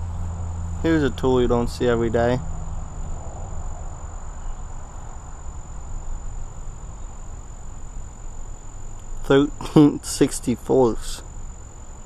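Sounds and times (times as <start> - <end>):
low rumble: 0.0 - 10.0
crickets trilling: 0.0 - 12.0.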